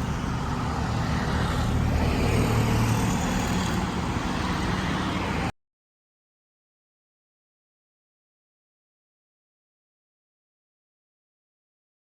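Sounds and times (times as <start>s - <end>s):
vehicle engine rumbling: 0.0s - 5.5s.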